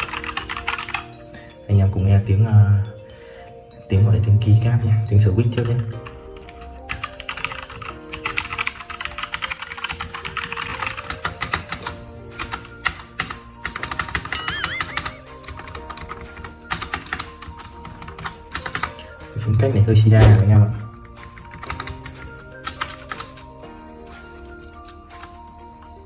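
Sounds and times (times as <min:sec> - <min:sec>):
mechanical keyboard keys clacking: 0:00.0 - 0:01.1, 0:05.4 - 0:19.1, 0:20.2 - 0:23.4.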